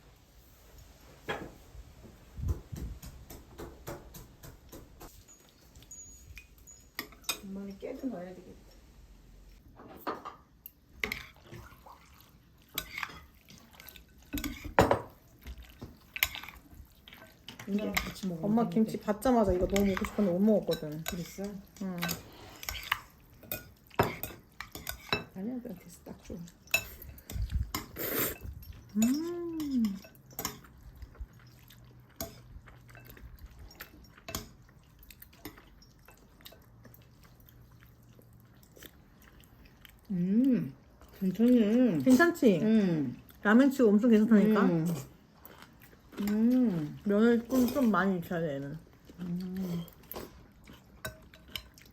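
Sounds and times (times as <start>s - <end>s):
cutlery clinking on dishes: 4.1s - 7.5s, 22.0s - 25.4s, 26.6s - 30.8s, 32.2s - 34.7s, 49.8s - 51.9s
soft chewing: 10.7s - 51.9s.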